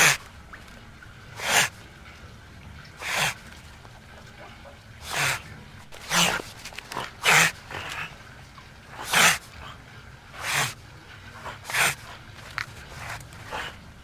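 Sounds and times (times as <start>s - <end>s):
otter breathing: 0.0s - 0.3s, 1.3s - 1.8s, 2.9s - 3.7s, 4.3s - 14.0s
otter snarling: 0.0s - 0.3s, 1.4s - 1.8s, 3.0s - 3.6s, 5.0s - 8.2s, 8.9s - 10.8s, 11.4s - 13.9s
otter hissing: 5.0s - 8.1s.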